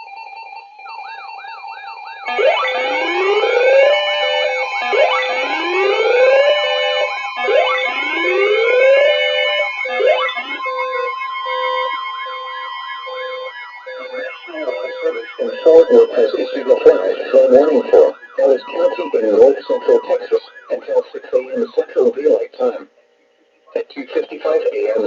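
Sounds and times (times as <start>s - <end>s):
electronic emergency sirens: 0.0s - 23.8s.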